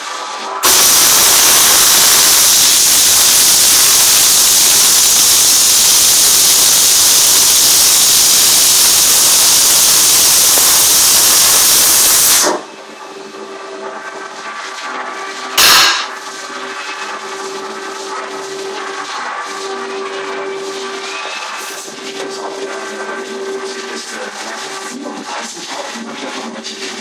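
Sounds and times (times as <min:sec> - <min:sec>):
welding arc hissing: 0:00.2 - 0:12.6, 0:15.6 - 0:17.2.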